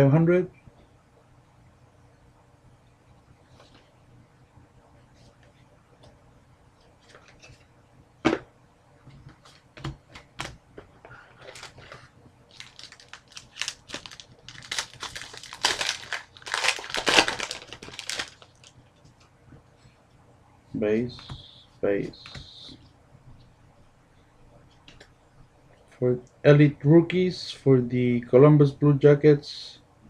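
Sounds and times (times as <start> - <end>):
foil wrapper crinkling: 12.5 - 18.7.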